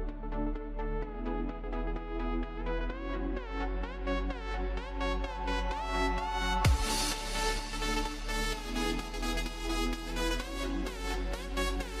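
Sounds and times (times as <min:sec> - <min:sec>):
electronic dance music: 0:01.0 - 0:12.0.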